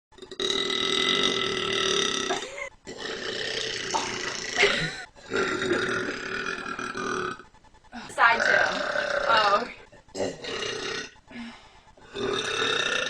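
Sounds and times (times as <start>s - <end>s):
woman burping: 0.2s - 7.4s, 8.0s - 11.2s.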